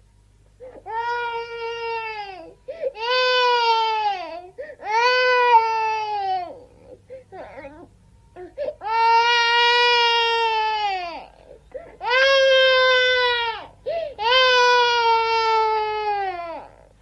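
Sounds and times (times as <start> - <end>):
baby crying: 0.6 - 16.9
baby gasping sobs: 2.7 - 3.0, 4.6 - 5.0, 13.8 - 14.2.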